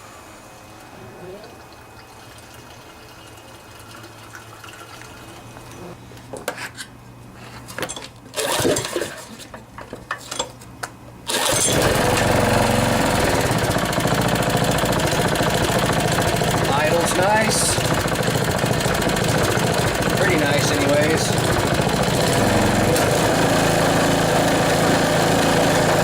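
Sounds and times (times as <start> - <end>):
small engine starting and running: 8.3 - 9.3, 11.3 - 26.0.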